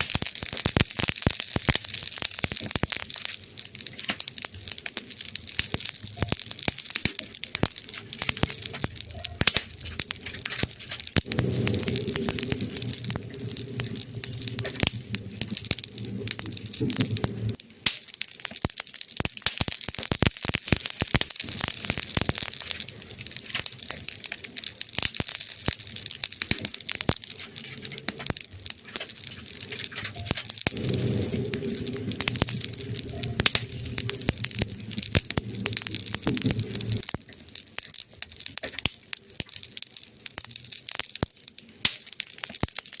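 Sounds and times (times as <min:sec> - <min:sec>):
campfire crackling and popping: 0:00.0 - 0:43.0
low hum: 0:10.6 - 0:17.6, 0:29.1 - 0:37.2.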